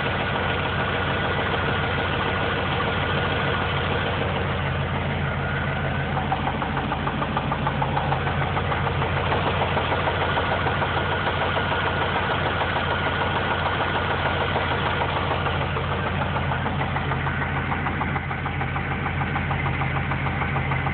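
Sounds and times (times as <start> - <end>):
car engine idling: 0.0 - 20.9
rapid regular engine knock: 0.0 - 20.9.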